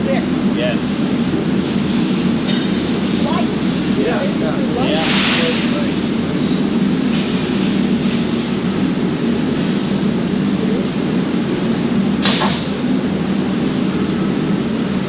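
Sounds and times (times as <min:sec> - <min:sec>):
loud machinery drone: 0:00.0 - 0:15.0
sharp hiss-like burst: 0:04.9 - 0:06.0.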